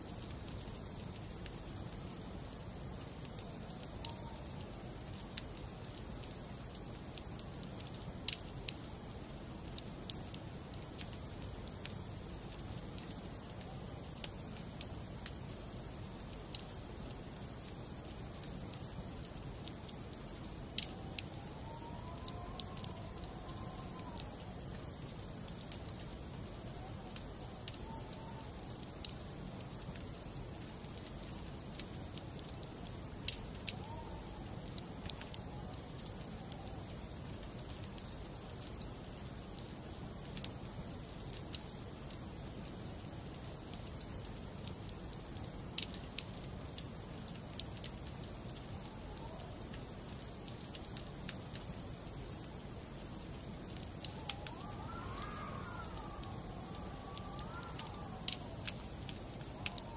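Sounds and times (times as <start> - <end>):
crackles and pops from logs: 0.0 - 59.9
fire low rumble: 0.0 - 59.9.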